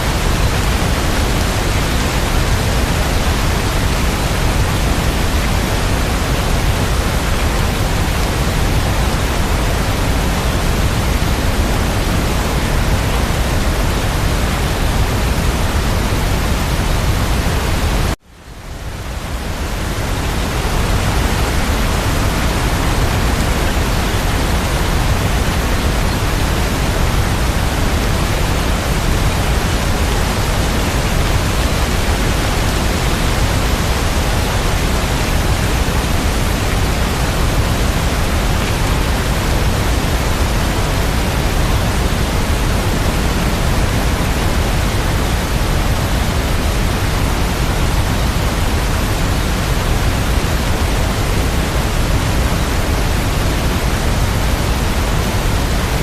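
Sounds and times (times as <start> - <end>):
steady rain: 0.0 - 56.0.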